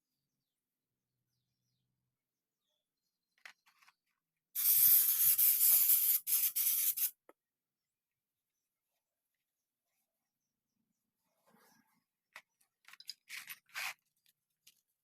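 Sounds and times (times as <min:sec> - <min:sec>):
spray hissing: 0:04.6 - 0:07.1.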